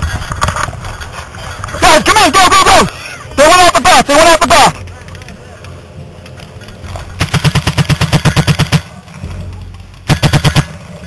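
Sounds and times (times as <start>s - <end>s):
paintball marker firing: 7.2s - 9.0s, 10.0s - 11.0s.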